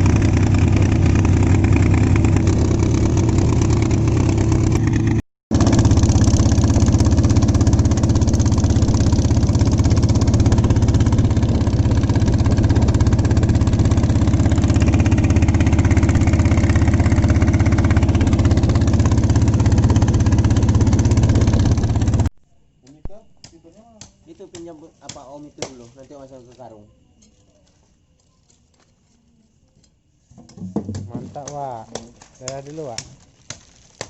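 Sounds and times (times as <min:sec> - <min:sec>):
boat engine chugging at idle: 0:00.0 - 0:22.3.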